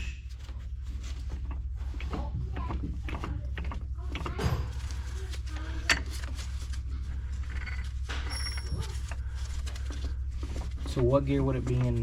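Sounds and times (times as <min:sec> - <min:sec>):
steady low hum: 0:00.0 - 0:12.0
metal parts clicking and scraping: 0:07.4 - 0:09.9
high metallic ring: 0:08.1 - 0:08.9.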